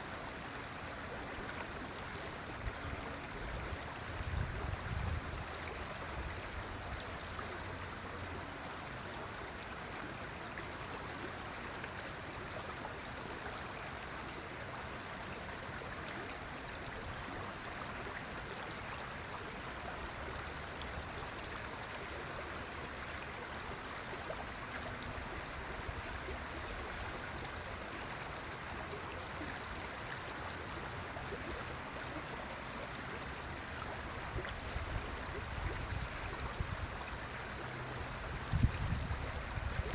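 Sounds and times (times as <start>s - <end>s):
river water rushing: 22.6s - 39.9s.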